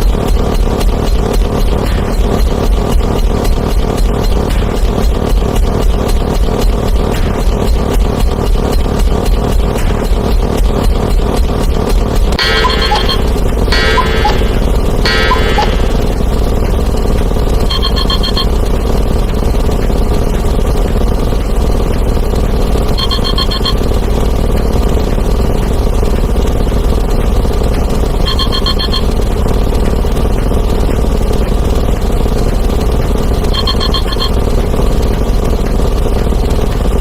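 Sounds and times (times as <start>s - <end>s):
pulsing electronic ring: 12.4s - 18.9s, 22.9s - 24.0s, 28.2s - 29.2s, 33.4s - 34.8s.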